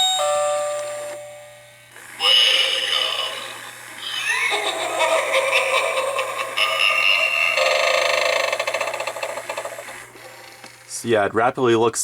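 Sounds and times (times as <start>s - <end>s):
doorbell spooky electronic tune: 0.0s - 7.8s
rising squeal: 2.2s - 5.2s.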